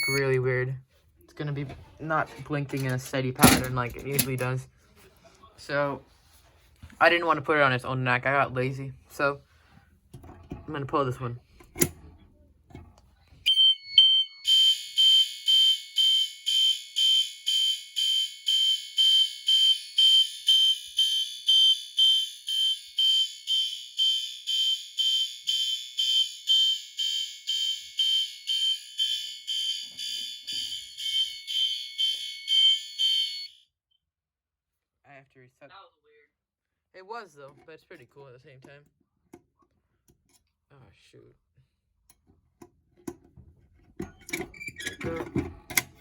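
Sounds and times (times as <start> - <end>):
fire alarm horn pulsing: 0.0 - 0.4, 13.4 - 33.6
fire alarm steady high tone: 0.0 - 0.4, 13.4 - 33.8.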